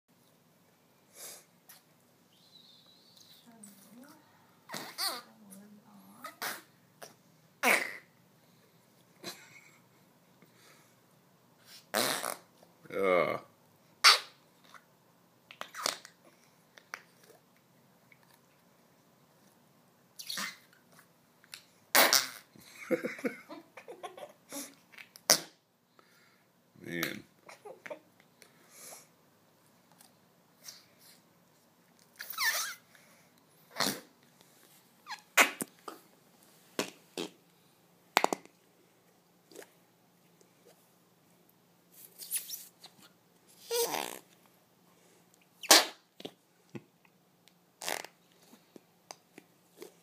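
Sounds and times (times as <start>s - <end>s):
fart noises: 4.7s - 5.3s, 6.3s - 8.1s, 11.8s - 12.6s, 14.0s - 14.8s, 15.6s - 16.2s, 20.2s - 20.7s, 21.9s - 22.6s, 25.2s - 25.6s, 33.7s - 34.1s, 35.0s - 36.0s, 36.8s - 37.4s, 43.7s - 44.4s, 45.6s - 46.3s, 47.8s - 48.2s.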